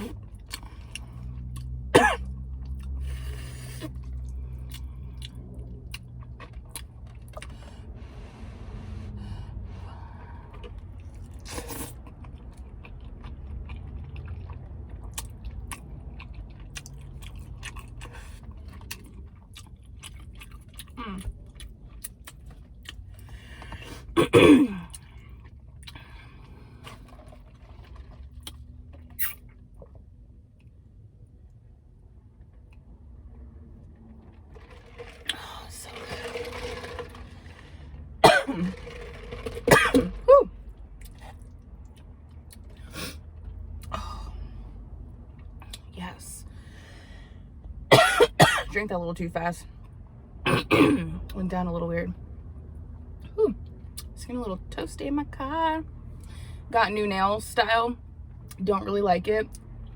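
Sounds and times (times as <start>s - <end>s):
low steady hum: 0.0s - 59.9s
person chewing: 10.5s - 23.7s.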